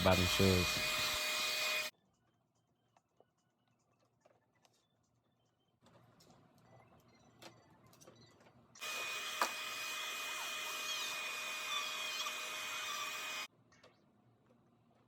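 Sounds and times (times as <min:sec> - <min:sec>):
blow dryer running: 0:00.0 - 0:01.9, 0:08.8 - 0:13.5.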